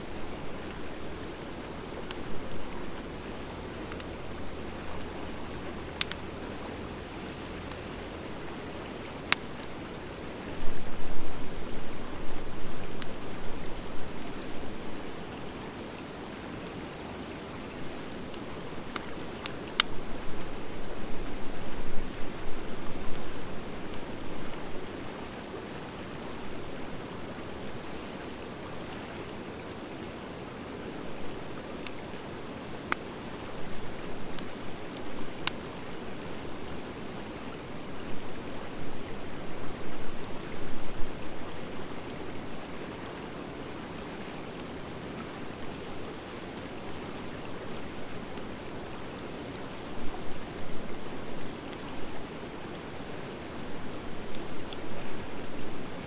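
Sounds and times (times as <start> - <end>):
wood fire crackling: 0.0 - 56.0
sharp pops of fire: 5.9 - 6.4.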